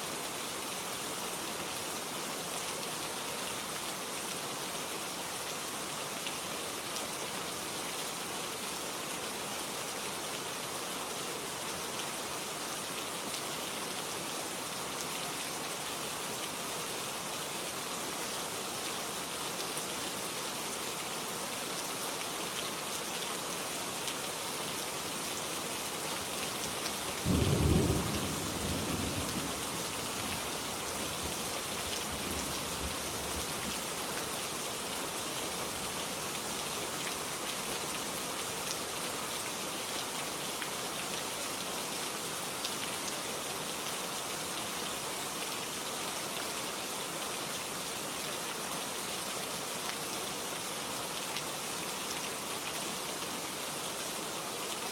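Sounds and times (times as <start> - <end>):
steady rain falling: 0.0 - 54.9
low rumble of thunder: 27.3 - 30.4.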